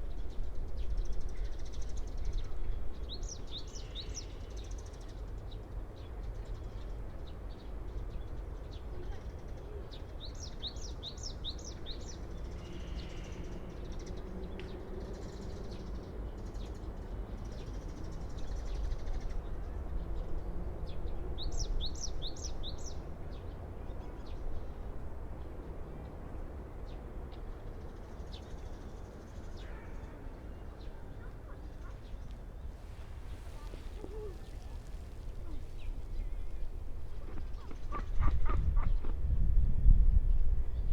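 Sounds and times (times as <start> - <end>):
songbird singing: 30.6 - 39.1
faint bird chirps: 31.2 - 36.6.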